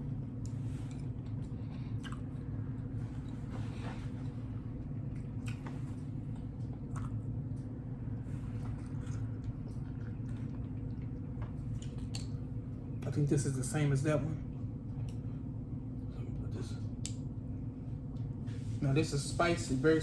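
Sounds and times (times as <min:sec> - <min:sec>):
low hum: 0:00.0 - 0:20.0
close chewing with mouth clicks: 0:00.4 - 0:03.5, 0:04.1 - 0:07.8, 0:08.4 - 0:12.4.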